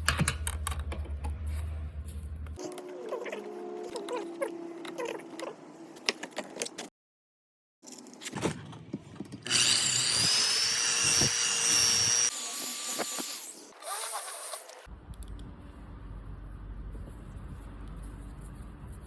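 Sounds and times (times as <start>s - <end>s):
power tool whining: 9.5s - 14.7s.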